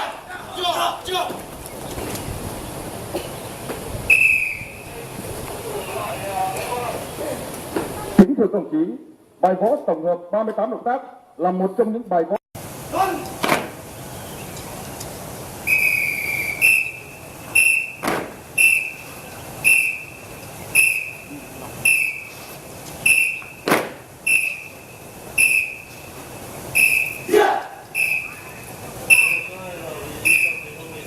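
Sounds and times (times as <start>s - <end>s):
whistle blasts: 4.0s - 5.0s, 15.6s - 29.6s, 30.2s - 30.8s.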